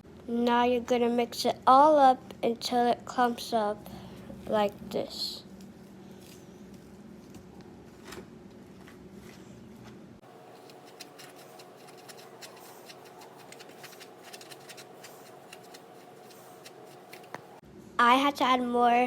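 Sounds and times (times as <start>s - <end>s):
spoon scraping a bowl: 10.4s - 17.6s.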